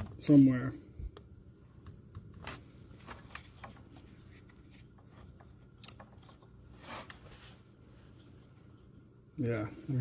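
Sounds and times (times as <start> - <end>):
plastic parts clicking and rubbing: 1.8 - 6.6.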